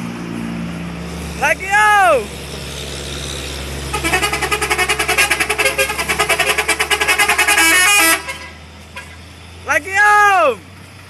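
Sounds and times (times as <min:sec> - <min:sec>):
engine rumble: 0:00.0 - 0:11.0
musical vehicle horn: 0:03.9 - 0:09.2.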